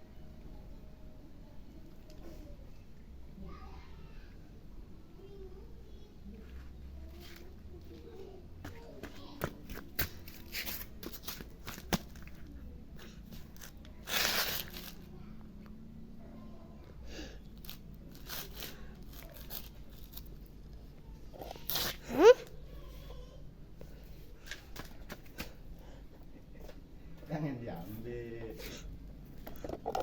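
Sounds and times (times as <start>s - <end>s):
rustling crunch: 8.7s - 12.5s, 13.4s - 15.1s, 17.6s - 20.5s.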